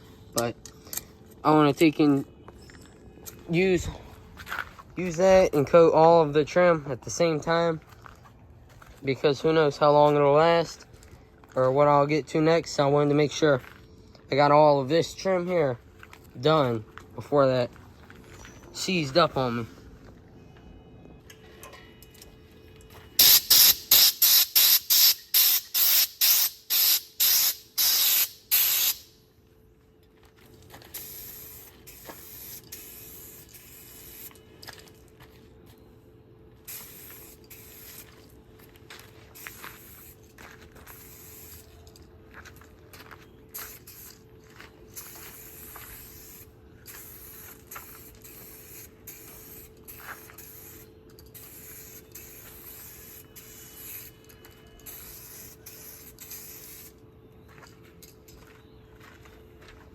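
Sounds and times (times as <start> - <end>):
aerosol can spraying bursts: 23.2 - 29.1, 30.9 - 34.3, 36.7 - 38.1, 40.9 - 41.6, 45.0 - 54.1, 54.9 - 56.9.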